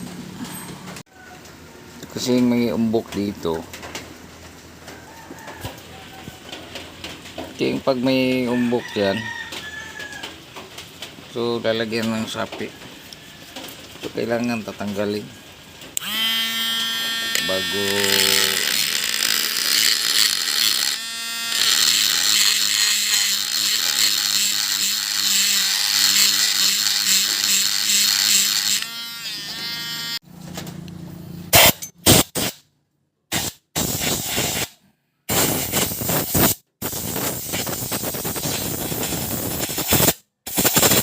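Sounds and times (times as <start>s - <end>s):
electric power tool whirring: 16.0s - 30.2s.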